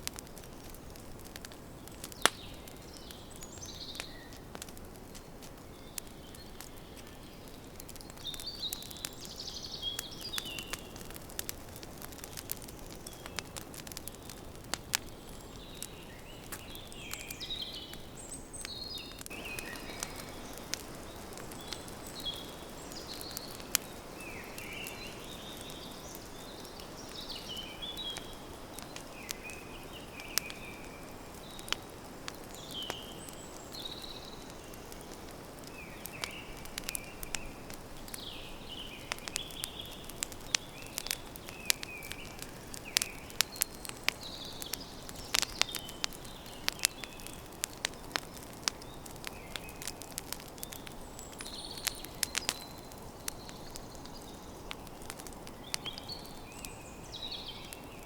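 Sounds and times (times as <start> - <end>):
campfire crackling and popping: 0.0 - 58.0
small birds chirping: 0.0 - 58.0.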